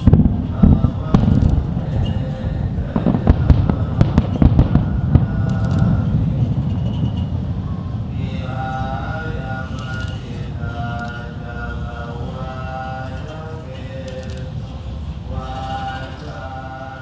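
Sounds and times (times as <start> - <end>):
deep rumbling booms: 0.0 - 10.6
fireworks sharp bangs: 0.0 - 10.6.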